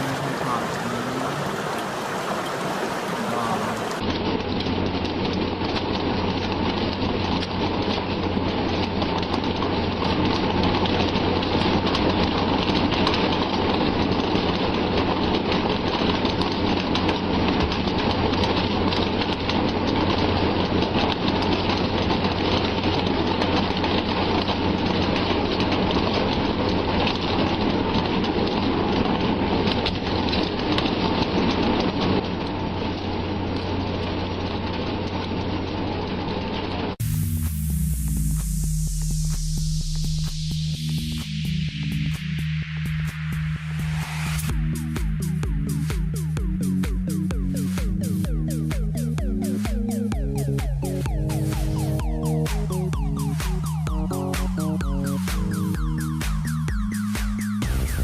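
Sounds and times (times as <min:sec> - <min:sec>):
water rushing: 0:00.0 - 0:04.1
low steady hum: 0:36.9 - 0:58.0.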